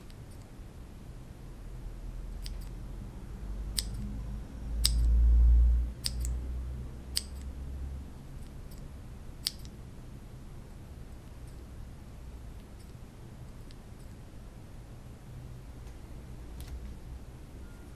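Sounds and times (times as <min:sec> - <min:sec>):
mechanical keyboard switch clicks: 0:03.8 - 0:04.0, 0:04.8 - 0:05.1, 0:06.0 - 0:06.4, 0:07.2 - 0:07.5.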